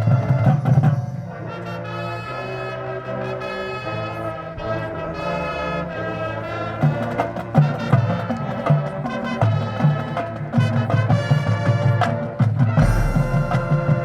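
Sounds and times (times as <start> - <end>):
brass section sustained chords: 0.0 - 14.0
low drum hits: 12.8 - 14.0.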